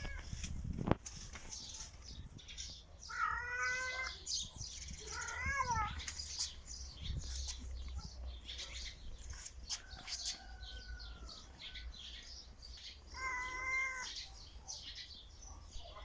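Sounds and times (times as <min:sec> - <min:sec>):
cat meowing: 0:03.1 - 0:04.3, 0:05.0 - 0:06.0, 0:13.1 - 0:14.2.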